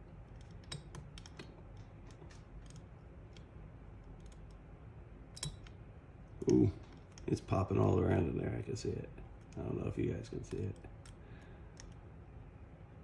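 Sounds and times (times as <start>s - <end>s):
small metal clicks and ticks: 5.4s - 5.8s.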